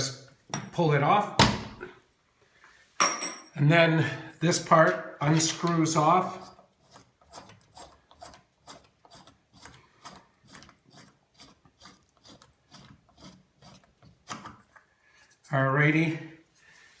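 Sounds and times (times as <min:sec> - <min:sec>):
threads grating while unscrewing: 0:05.2 - 0:15.6.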